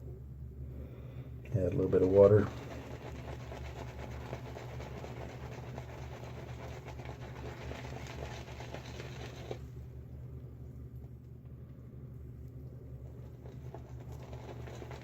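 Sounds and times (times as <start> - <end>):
low steady hum: 0.0 - 15.0
shaving brush swishing in lather: 1.8 - 9.6.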